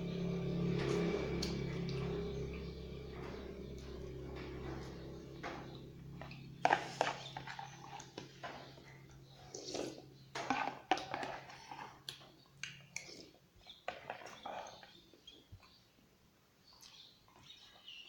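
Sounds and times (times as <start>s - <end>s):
chewing and mouth noises: 10.9s - 15.0s.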